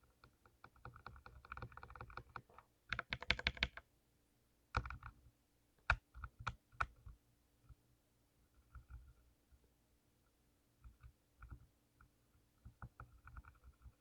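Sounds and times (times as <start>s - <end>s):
typing on mechanical keyboard: 0.2s - 3.8s, 4.8s - 5.1s, 12.7s - 14.0s.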